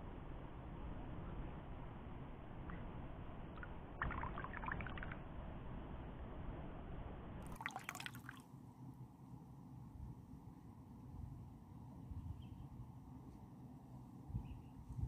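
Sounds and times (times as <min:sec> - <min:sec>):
small water splashes and drips: 0:03.6 - 0:05.2, 0:07.5 - 0:08.4.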